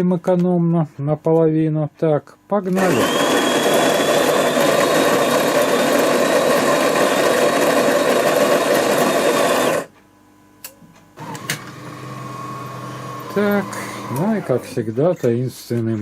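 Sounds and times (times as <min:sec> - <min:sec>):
coffee grinder whirring: 0:02.7 - 0:09.9, 0:11.2 - 0:14.8
quiet machine hum: 0:08.8 - 0:16.0.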